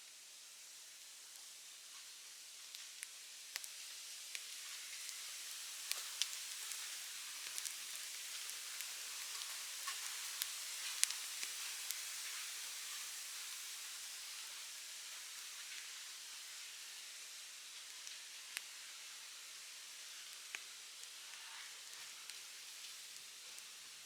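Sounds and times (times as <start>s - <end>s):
wood fire crackling and popping: 2.6s - 14.3s, 19.8s - 24.0s.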